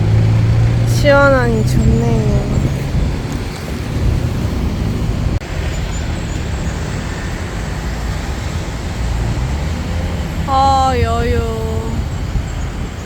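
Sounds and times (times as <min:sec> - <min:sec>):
traffic rumble: 0:00.0 - 0:13.0.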